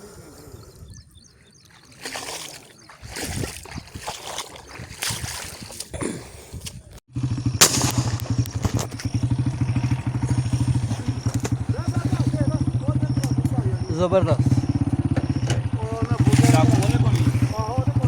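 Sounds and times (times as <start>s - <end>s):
small engine running: 7.1s - 18.0s.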